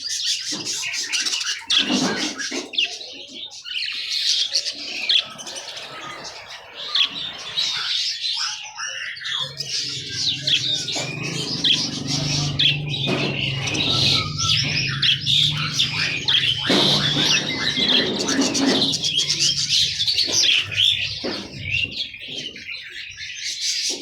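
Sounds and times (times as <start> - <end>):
small birds chirping: 0.0 - 24.0
steady low hum: 9.4 - 22.2.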